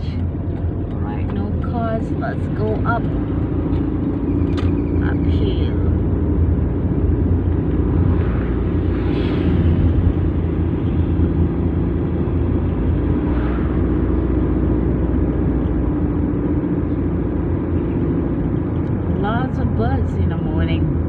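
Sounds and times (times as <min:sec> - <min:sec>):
car engine and tyre rumble: 0:00.0 - 0:21.0.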